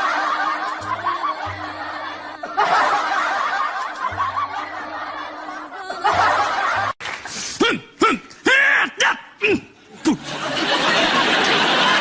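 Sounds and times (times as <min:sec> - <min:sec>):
background music: 0:00.0 - 0:07.9
people laughing: 0:00.0 - 0:12.0.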